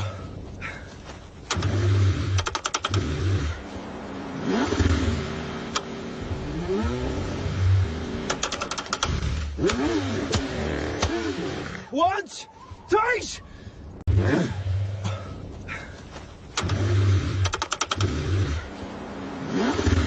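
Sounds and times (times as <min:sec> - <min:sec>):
sharp clicks: 0:01.4 - 0:03.1, 0:05.7 - 0:05.9, 0:08.2 - 0:11.2, 0:16.5 - 0:18.2
car engine cranking: 0:01.4 - 0:03.8, 0:04.4 - 0:11.9, 0:16.4 - 0:20.0.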